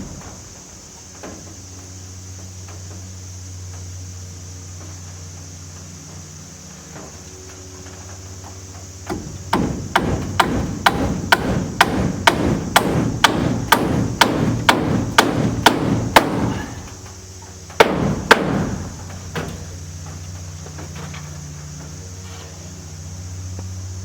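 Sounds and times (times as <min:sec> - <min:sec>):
hammer driving nails into wood: 0:09.1 - 0:17.2, 0:17.8 - 0:19.6.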